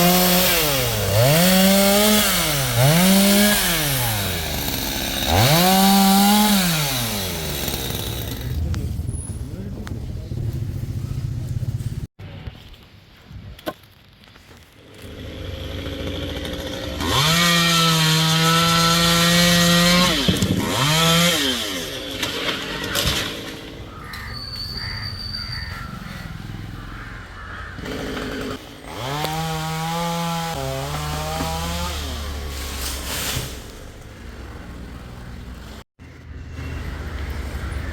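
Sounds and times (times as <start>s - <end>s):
chainsaw revving: 0.0s - 8.7s, 15.0s - 23.0s, 27.8s - 32.9s.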